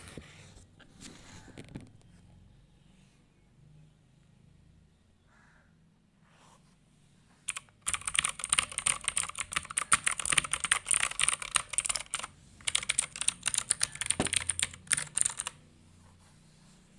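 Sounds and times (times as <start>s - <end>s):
mechanical keyboard typing: 7.5s - 15.6s.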